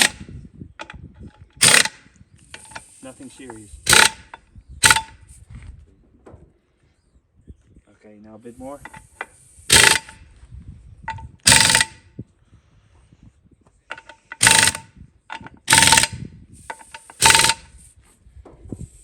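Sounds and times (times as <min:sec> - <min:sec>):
impact wrench bursts: 0:00.0 - 0:00.2, 0:00.8 - 0:05.2, 0:08.7 - 0:10.2, 0:11.1 - 0:12.0, 0:13.9 - 0:17.9.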